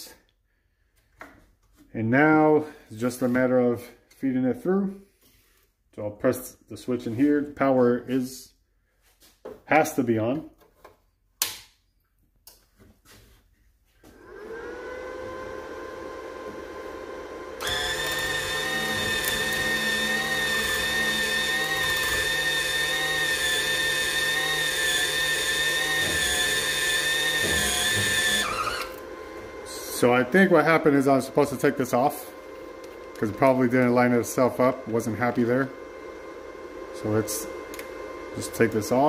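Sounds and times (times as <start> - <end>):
welder cooling fan: 14.1 - 39.0
wire-feed motor whine: 14.1 - 39.0.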